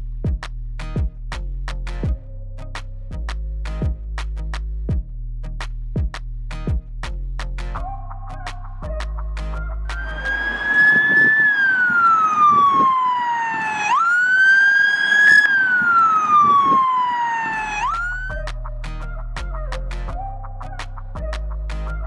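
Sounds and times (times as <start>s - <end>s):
music: 0.0s - 10.3s, 18.3s - 22.0s
rushing noise: 9.9s - 18.3s
wailing siren: 10.0s - 18.5s.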